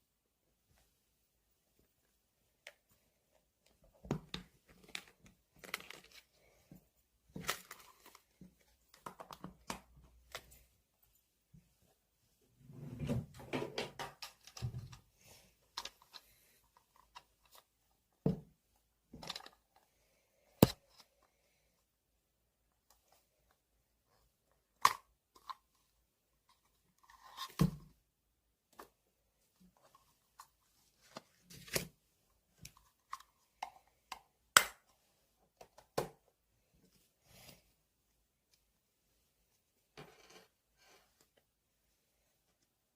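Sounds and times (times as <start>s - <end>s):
rustling and crinkling: 1.8s - 12.6s, 28.6s - 34.0s.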